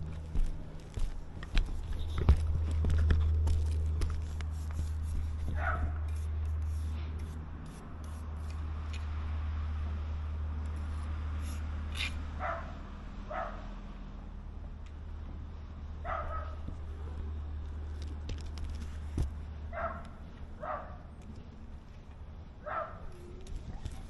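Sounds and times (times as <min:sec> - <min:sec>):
steady low rumble: 0:00.0 - 0:24.0
dog barking: 0:05.6 - 0:06.0, 0:12.4 - 0:13.7, 0:16.0 - 0:16.6, 0:19.7 - 0:21.0, 0:22.6 - 0:23.1.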